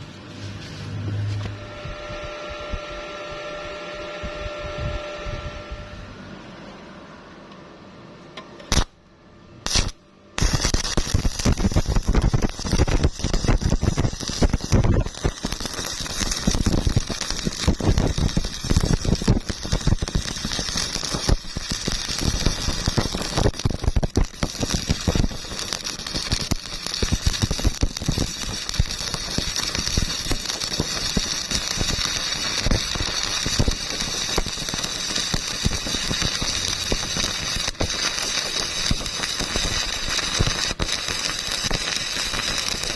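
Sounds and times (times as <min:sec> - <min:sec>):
welding arc crackling and sizzling: 0:00.0 - 0:06.1, 0:08.6 - 0:09.0, 0:09.6 - 0:42.9.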